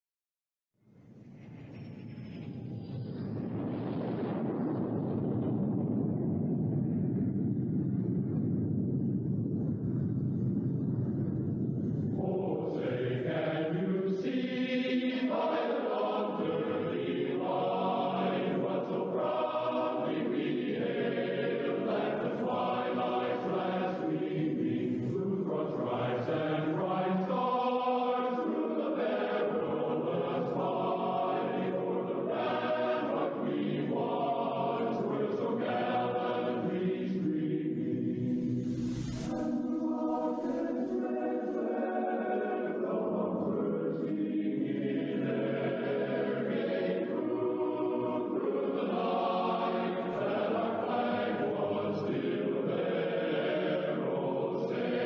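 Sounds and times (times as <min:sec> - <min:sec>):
low rumbling noise: 0:01.0 - 0:55.0
choir singing an anthem: 0:12.1 - 0:55.0.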